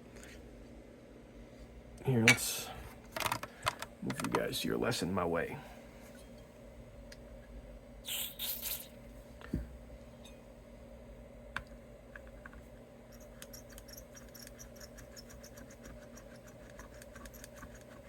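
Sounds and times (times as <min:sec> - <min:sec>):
faint steady hum: 0:00.0 - 0:18.0
short hisses: 0:08.0 - 0:08.9.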